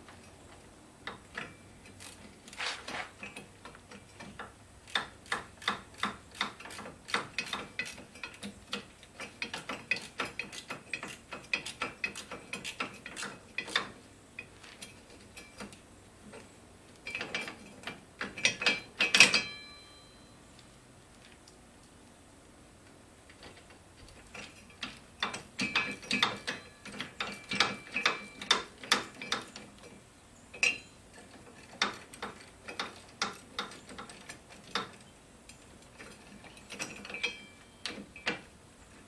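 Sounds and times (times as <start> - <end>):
metal clank ringing: 18.4 - 20.4, 30.6 - 31.0, 36.5 - 38.4.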